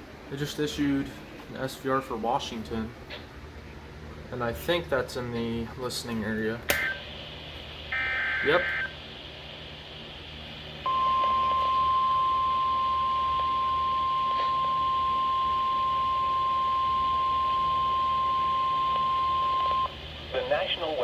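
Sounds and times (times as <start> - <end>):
faint receiver hiss: 5.3 - 7.8
steady alarm tone: 7.9 - 9.0, 10.8 - 20.0.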